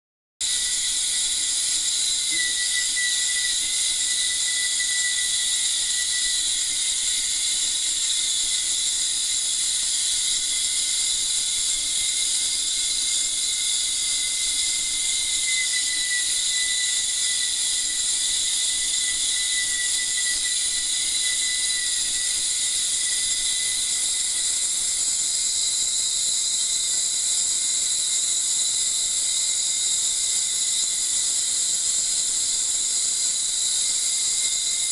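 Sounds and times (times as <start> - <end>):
high-pitched cavitation hiss: 0.4 - 28.0
faint whistling tone: 0.4 - 34.9.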